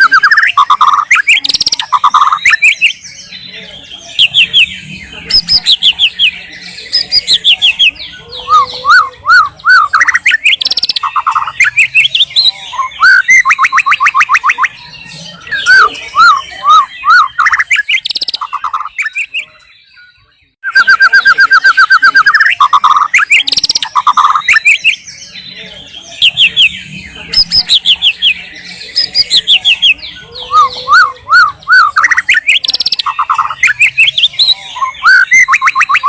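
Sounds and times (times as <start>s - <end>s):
bird singing whistled phrases: 0.0s - 3.4s, 4.0s - 25.4s, 26.0s - 36.0s.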